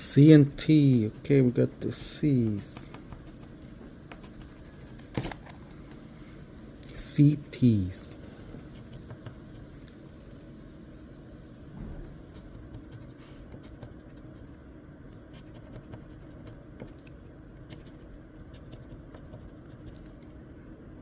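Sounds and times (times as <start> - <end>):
low background noise: 0.0 - 21.0
scratch-off ticket scraping: 0.7 - 3.6.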